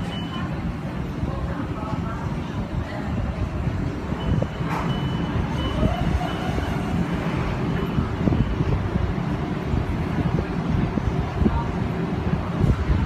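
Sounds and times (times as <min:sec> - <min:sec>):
train rumbling: 0:00.0 - 0:13.0
high electronic beeps: 0:04.1 - 0:06.9, 0:07.6 - 0:08.7.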